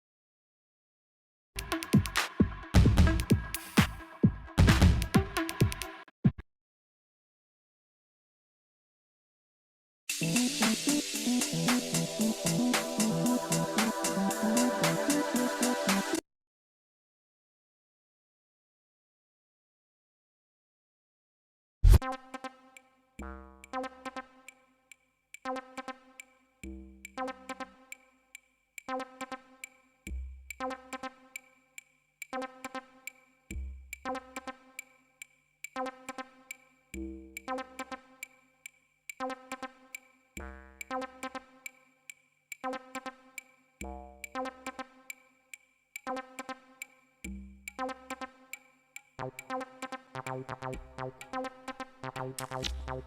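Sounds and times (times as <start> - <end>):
electronic dub music: 1.6 - 6.1, 10.1 - 16.2, 49.2 - 53.0
synthesizer chord stabs: 10.1 - 16.2, 49.2 - 53.0
deep bass notes: 50.3 - 51.2.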